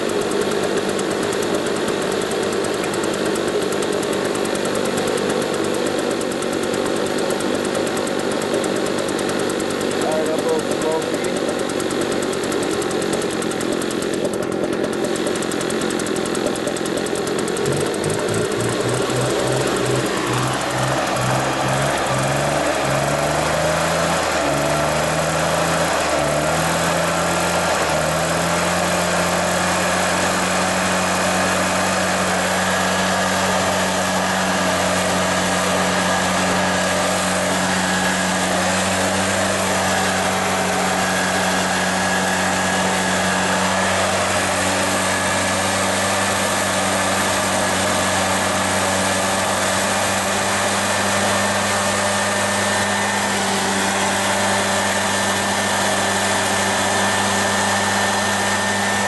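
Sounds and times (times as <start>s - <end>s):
leaf blower engine running: 0.0s - 59.0s.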